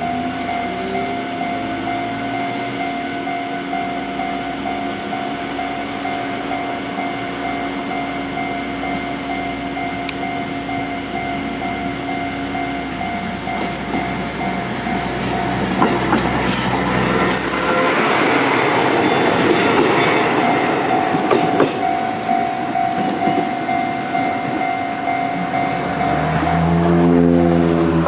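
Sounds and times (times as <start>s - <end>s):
level crossing alarm ringing: 0.0s - 27.1s
diesel railcar approaching: 0.0s - 28.0s
train wheels clicking on rail joints: 12.9s - 27.1s.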